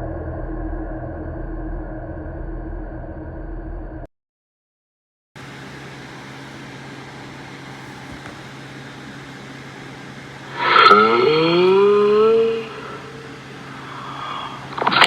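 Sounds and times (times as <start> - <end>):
low hum: 0.0 - 4.1, 5.4 - 15.0
steady hiss: 5.4 - 15.0.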